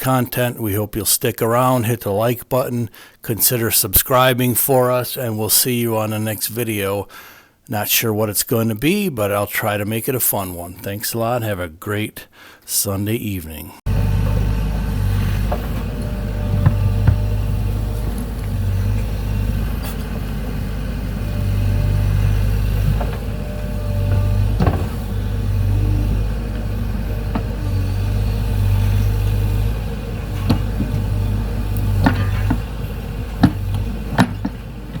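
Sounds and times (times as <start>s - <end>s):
short knocks and rattles: 13.9s - 28.1s, 30.2s - 35.0s
vehicle engine rumbling: 13.9s - 35.0s.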